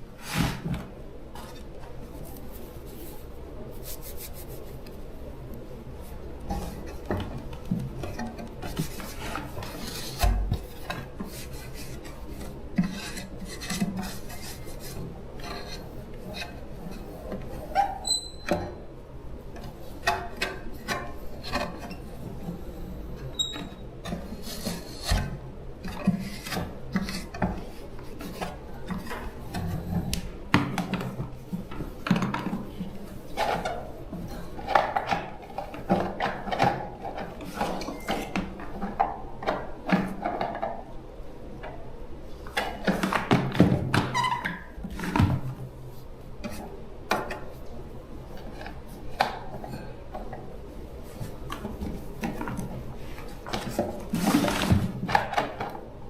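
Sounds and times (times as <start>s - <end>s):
scraping and filing on fan parts: 8.1s - 18.4s.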